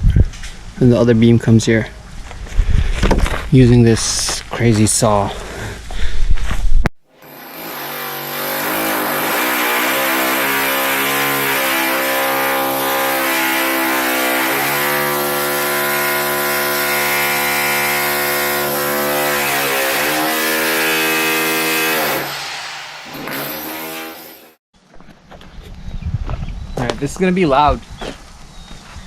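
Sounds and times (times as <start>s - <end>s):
power saw cutting: 7.1s - 24.6s.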